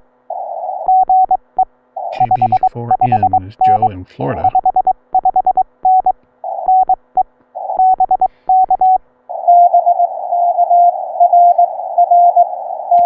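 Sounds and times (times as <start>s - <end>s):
receiver hiss: 0.0s - 4.9s
morse code sidetone: 0.9s - 7.0s, 7.6s - 13.0s
lower-pitched morse code: 2.1s - 7.0s, 7.8s - 13.0s.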